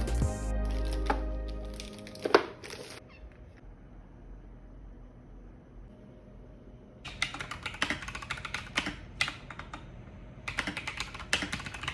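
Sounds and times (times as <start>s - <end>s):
mechanical keyboard typing: 7.1s - 9.9s, 10.5s - 11.9s.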